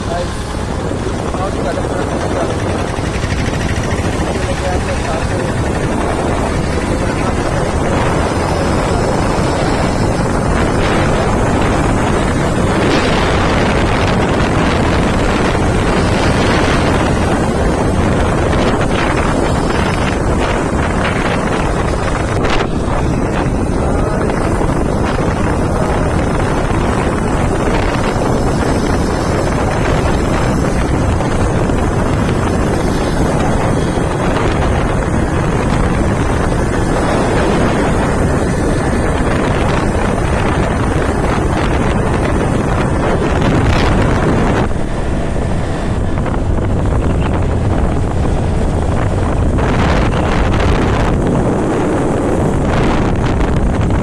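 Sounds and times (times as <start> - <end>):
road and engine noise: 0.0 - 54.0
wind rushing over microphone: 0.0 - 54.0.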